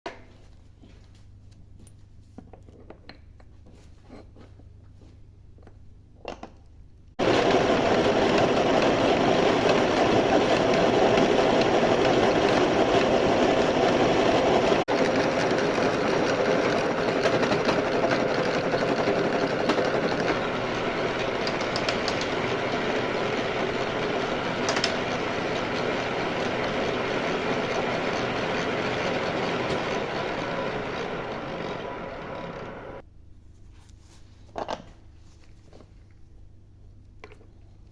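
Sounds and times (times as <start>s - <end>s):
lathe machining noise: 7.2s - 33.0s.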